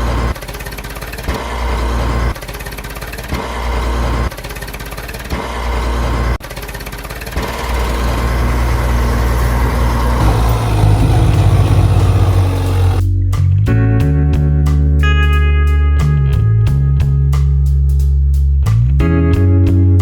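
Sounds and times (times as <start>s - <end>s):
truck engine revving: 7.4s - 13.0s.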